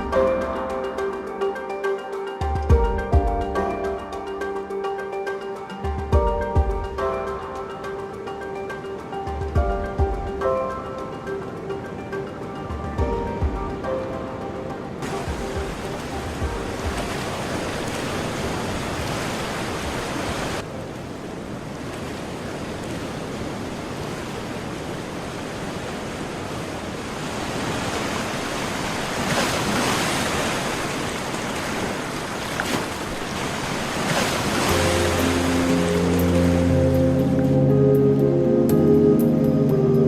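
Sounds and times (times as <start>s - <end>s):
soft music with held notes: 0.0s - 17.6s, 34.6s - 40.0s
ocean waves breaking on shore: 0.0s - 40.0s.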